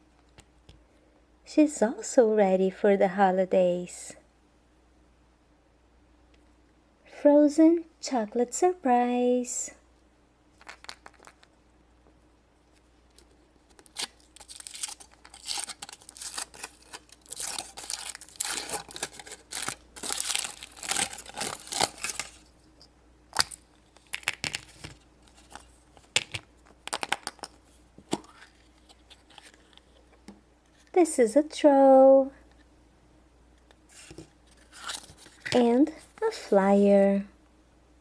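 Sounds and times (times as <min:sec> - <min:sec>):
wrapper tearing and crinkling: 0:13.2 - 0:22.6, 0:23.3 - 0:26.1, 0:26.8 - 0:29.7, 0:33.9 - 0:36.2.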